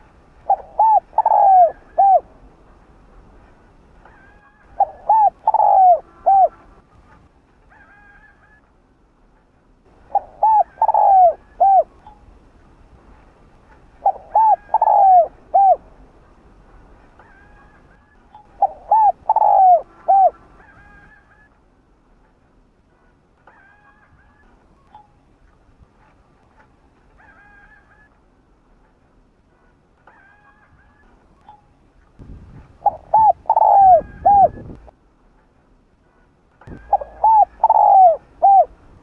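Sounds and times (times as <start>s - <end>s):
dove cooing: 0.0s - 2.3s, 4.1s - 6.7s, 10.0s - 12.0s, 14.0s - 15.9s, 18.6s - 21.5s, 32.8s - 34.9s, 36.7s - 38.8s.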